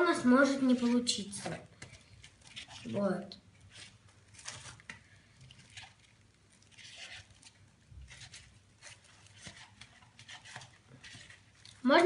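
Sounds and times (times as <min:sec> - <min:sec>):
paper rustling: 0:03.7 - 0:12.0.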